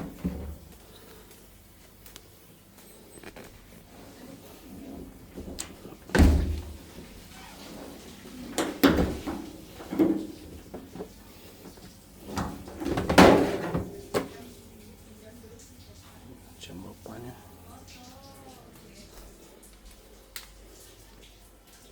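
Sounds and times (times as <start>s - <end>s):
washing machine cabinet knocks: 0.0s - 0.7s, 4.8s - 14.6s.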